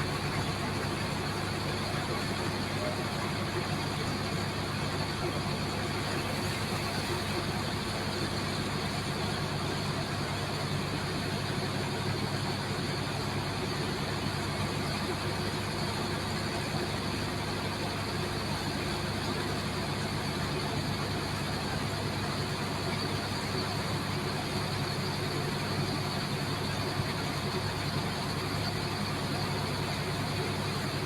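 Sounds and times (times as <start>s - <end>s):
engine drone: 0.0s - 31.0s
water jet hissing: 5.9s - 8.1s.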